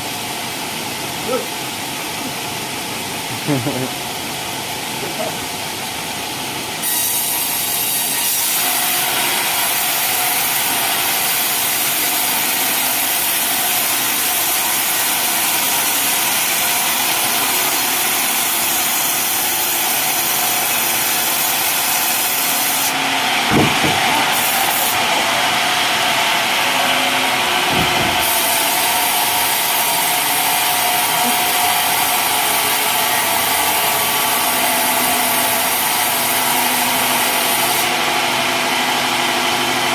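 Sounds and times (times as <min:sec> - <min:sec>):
sawmill blade cutting wood: 0:06.7 - 0:39.8
short knocks: 0:23.4 - 0:24.4, 0:27.6 - 0:28.4.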